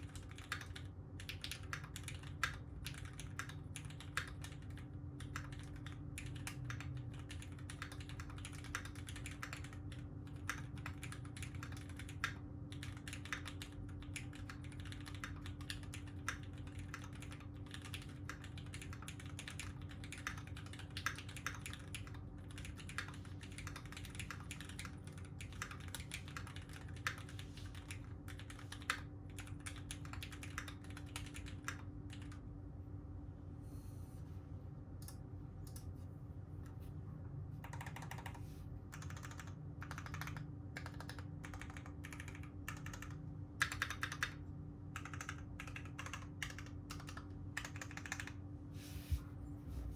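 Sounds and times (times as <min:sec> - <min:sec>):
mechanical keyboard typing: 0:00.0 - 0:32.4, 0:37.6 - 0:48.4
low hum: 0:48.8 - 0:49.9.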